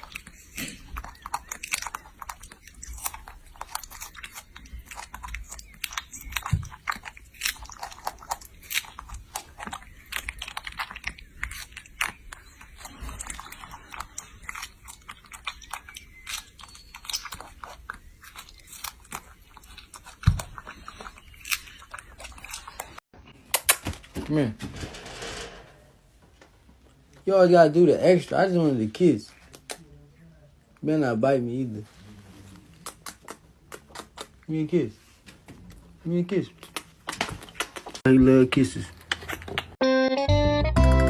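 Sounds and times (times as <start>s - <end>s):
crunchy chewing: 0.0s - 23.7s, 32.1s - 39.8s.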